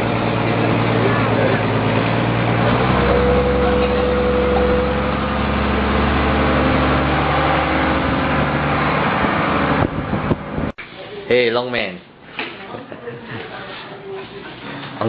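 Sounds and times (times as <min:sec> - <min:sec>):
boat engine running: 0:00.0 - 0:10.7
rushing noise: 0:00.0 - 0:10.7.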